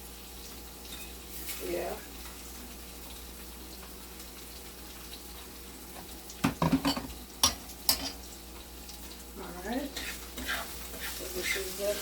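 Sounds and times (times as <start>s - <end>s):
oil sizzling in a frying pan: 0.0s - 12.0s
utensil clattering against pan: 6.4s - 8.2s.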